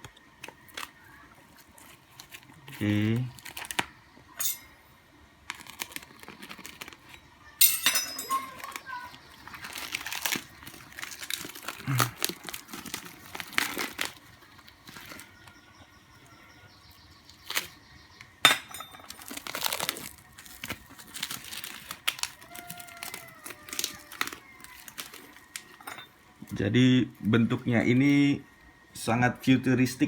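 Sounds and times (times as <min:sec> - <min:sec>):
packaging crinkling and rustling: 0:00.2 - 0:04.2, 0:05.4 - 0:07.3, 0:08.3 - 0:16.3, 0:16.9 - 0:26.4.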